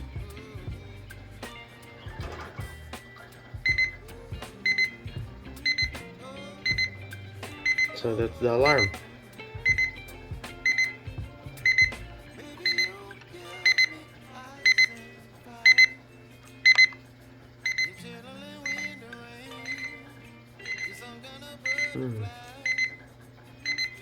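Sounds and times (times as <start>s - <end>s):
alarm clock beeping: 0.8s - 4.0s, 4.6s - 6.0s, 6.6s - 9.0s, 9.6s - 12.0s, 12.6s - 13.0s, 13.6s - 14.0s, 14.6s - 15.0s, 15.6s - 16.0s, 16.6s - 17.0s, 17.6s - 18.0s, 18.6s - 20.0s, 20.6s - 21.0s, 21.6s - 23.0s, 23.6s - 24.0s.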